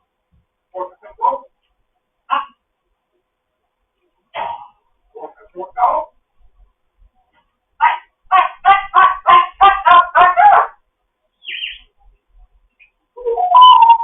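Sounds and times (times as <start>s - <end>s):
parrot honking calls: 7.8s - 10.8s.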